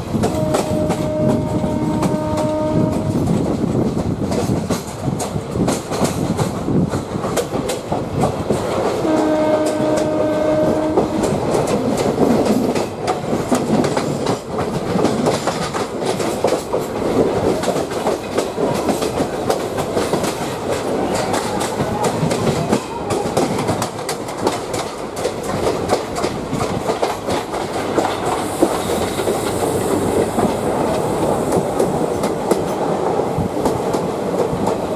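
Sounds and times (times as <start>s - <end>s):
train rumbling on rails: 0.0s - 34.9s
locomotive horn: 0.2s - 3.3s, 9.0s - 11.5s.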